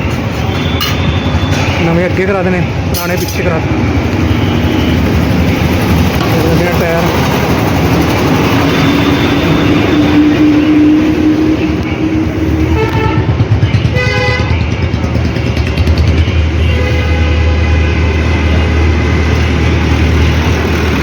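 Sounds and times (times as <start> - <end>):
vehicle horns honking: 0.0 - 1.8, 4.1 - 5.8, 8.6 - 18.6
road traffic noise: 0.0 - 21.0.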